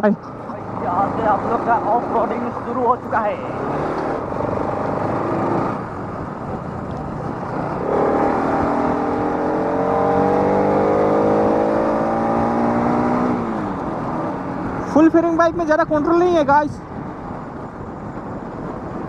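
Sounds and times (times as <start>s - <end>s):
motorcycle engine revving: 0.6s - 15.4s.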